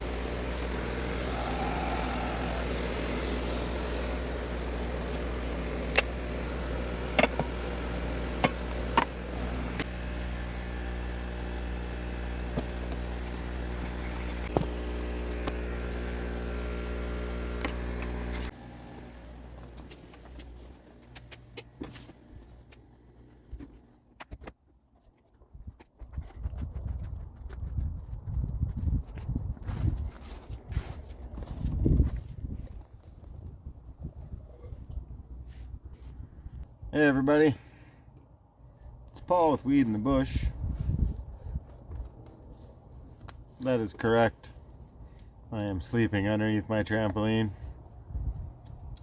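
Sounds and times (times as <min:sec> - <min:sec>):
car engine idling: 0:00.0 - 0:21.8.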